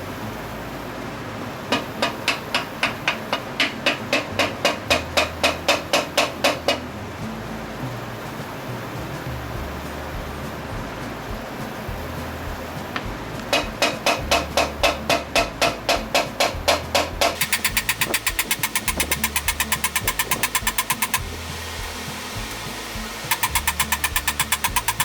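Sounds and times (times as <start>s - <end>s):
hammer striking metal: 13.5s - 21.4s, 23.2s - 25.0s.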